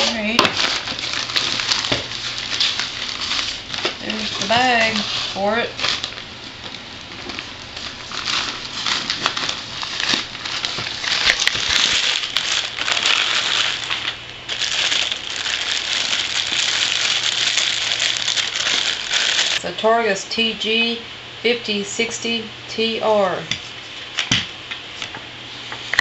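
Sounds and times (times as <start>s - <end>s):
packaging crinkling and rustling: 0.0s - 19.6s.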